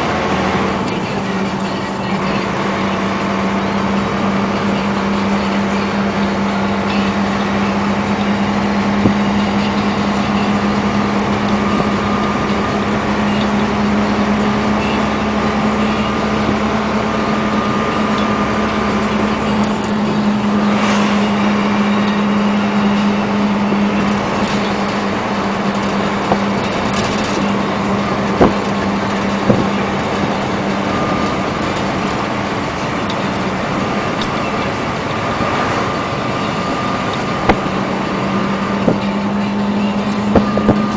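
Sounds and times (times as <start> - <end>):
diesel truck engine running: 0.0 - 40.9.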